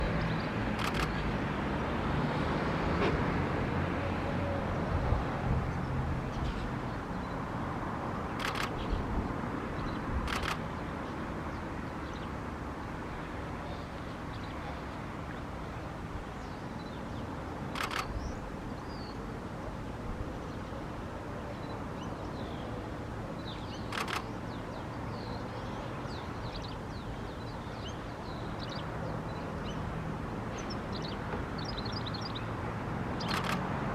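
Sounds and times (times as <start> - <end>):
sharp clicks: 0.8 - 1.2, 8.4 - 8.8, 10.2 - 10.7, 17.7 - 18.1, 23.9 - 24.3, 33.2 - 33.7.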